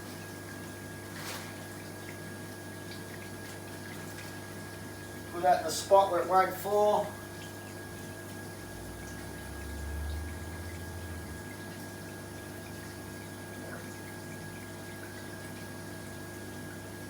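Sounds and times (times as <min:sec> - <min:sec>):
low electrical hum: 0:00.0 - 0:17.0.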